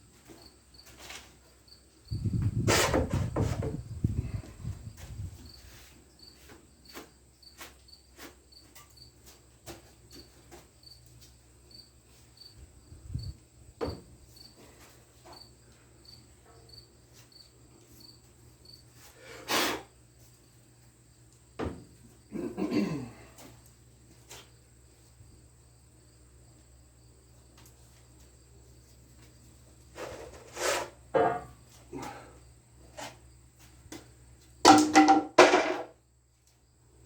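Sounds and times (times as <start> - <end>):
rustling scrape: 29.9 - 31.0.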